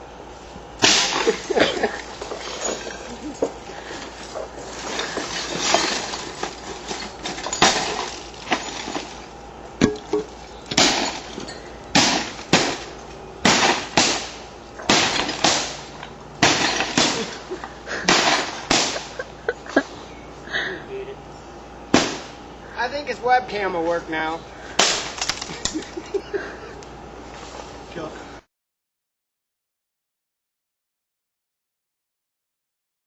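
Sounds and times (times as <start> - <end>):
crash of breaking parts: 0.8 - 19.3, 24.8 - 26.2.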